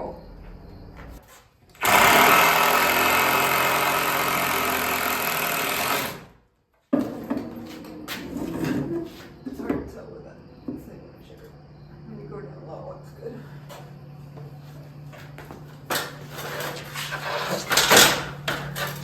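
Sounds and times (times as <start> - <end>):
circular saw cutting wood: 1.8 - 6.3.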